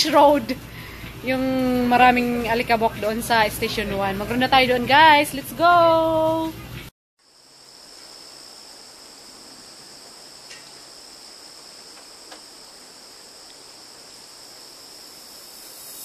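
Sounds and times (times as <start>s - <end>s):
insects singing: 7.3s - 16.0s.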